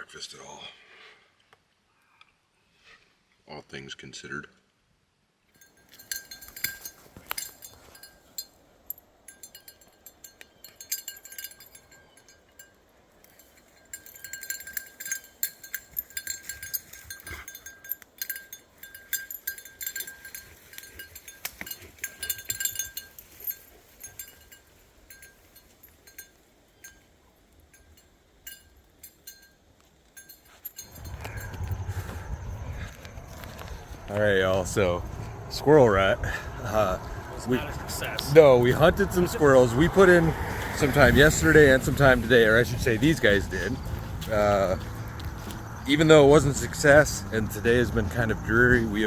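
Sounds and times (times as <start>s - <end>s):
spoon clinking against container: 9.3s - 27.0s.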